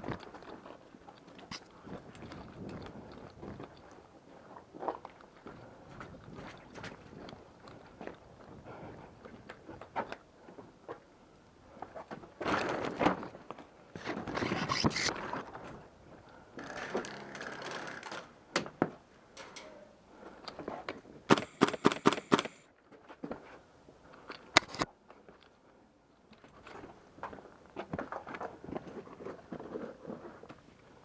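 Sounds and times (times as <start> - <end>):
scraping and crunching movement: 12.0 - 15.9
airsoft gun firing sharp cracks: 21.3 - 22.6.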